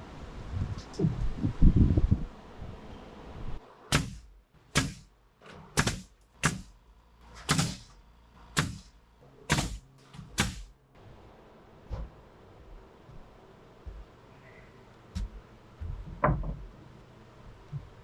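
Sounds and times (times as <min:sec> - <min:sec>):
hammer blows: 0:03.9 - 0:10.8.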